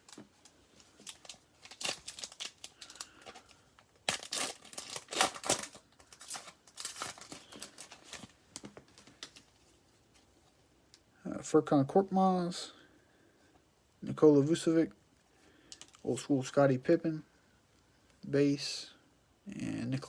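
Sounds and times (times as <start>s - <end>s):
foil wrapper tearing and crinkling: 0.9s - 8.4s.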